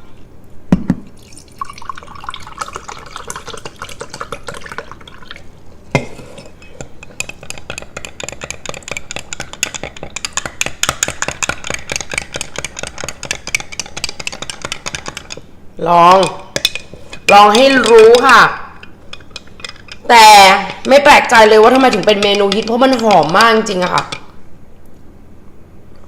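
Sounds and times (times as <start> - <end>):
liquid pouring into cup: 1.2 - 5.5
spoon clinking in cup: 16.2 - 21.0.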